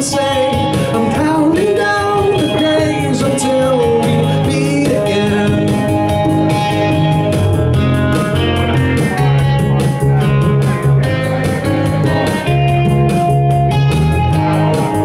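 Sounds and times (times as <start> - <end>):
person singing: 0.0 - 7.1
drum machine beat: 0.0 - 15.0
electric guitar: 0.0 - 15.0.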